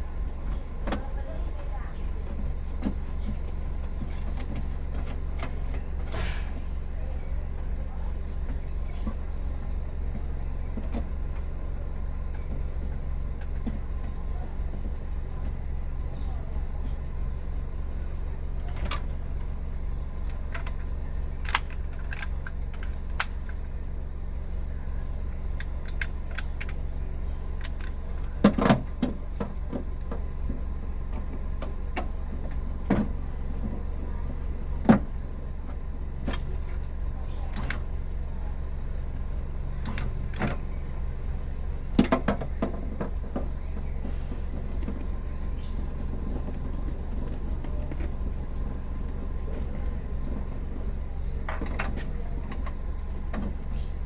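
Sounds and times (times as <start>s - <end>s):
steady low hum: 0.0s - 54.0s
clicks and knocks on car door: 27.6s - 33.8s, 34.8s - 36.5s, 41.9s - 43.9s.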